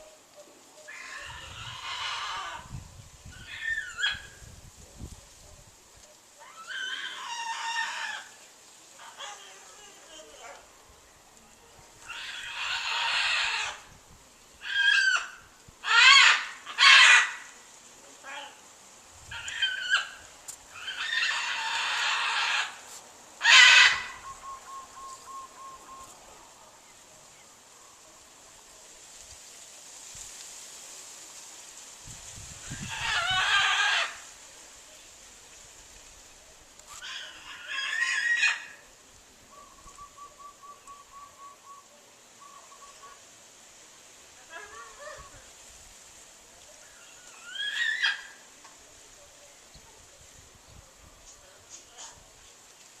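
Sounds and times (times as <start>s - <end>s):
large bird screeching: 0.9s - 4.4s, 6.4s - 8.4s, 12.1s - 13.9s, 14.6s - 17.4s, 19.3s - 22.8s, 23.4s - 26.1s, 32.7s - 34.2s, 37.0s - 38.8s, 47.3s - 48.4s
bird rising call: 23.4s - 26.2s.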